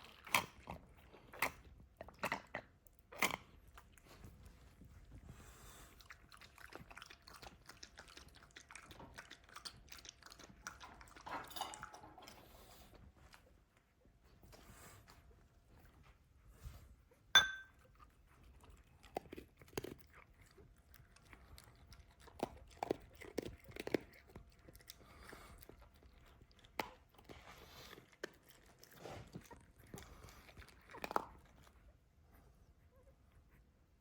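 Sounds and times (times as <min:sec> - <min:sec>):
dog chewing crunchy food: 0:00.0 - 0:12.6, 0:17.7 - 0:32.0
sharp ringing clink: 0:17.4 - 0:17.7.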